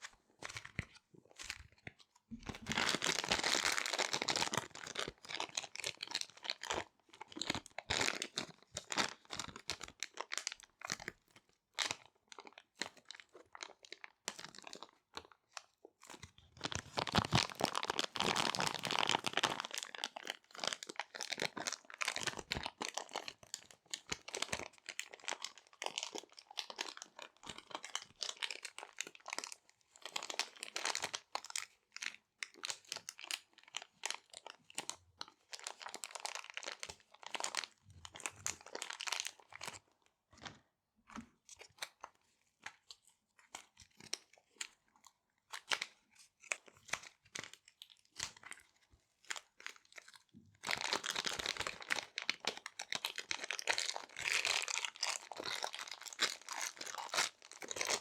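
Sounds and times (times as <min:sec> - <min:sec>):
plastic bags crinkling: 0:16.6 - 0:22.3, 0:50.7 - 0:58.0.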